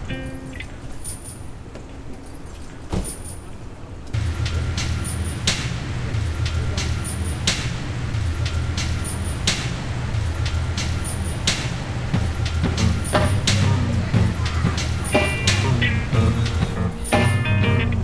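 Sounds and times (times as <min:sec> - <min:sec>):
music with deep bass and beat: 0:04.2 - 0:18.0.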